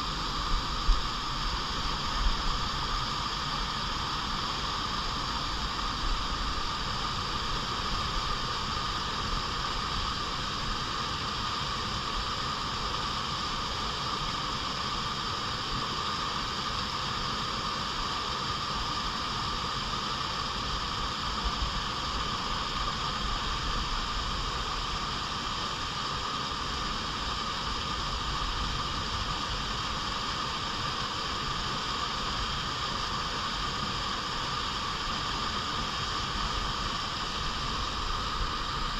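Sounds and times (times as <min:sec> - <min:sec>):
stream flowing: 0:27.2 - 0:38.9.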